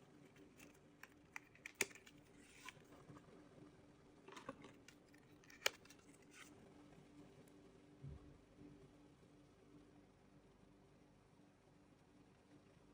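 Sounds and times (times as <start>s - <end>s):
cardboard and plastic clicks: 0.4s - 2.8s, 4.3s - 6.5s
packaging rustling: 4.3s - 6.5s.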